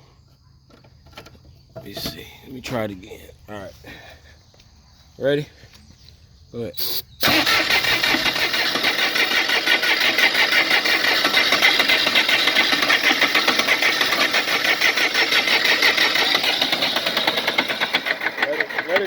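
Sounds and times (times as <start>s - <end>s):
engine cranking by starter: 0.7s - 2.9s, 6.8s - 19.0s.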